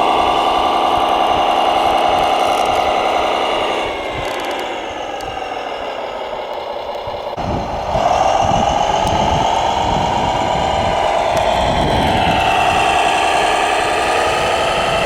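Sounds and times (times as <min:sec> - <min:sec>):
model machine motor whine: 0:00.0 - 0:15.0
low rumble: 0:07.1 - 0:15.0.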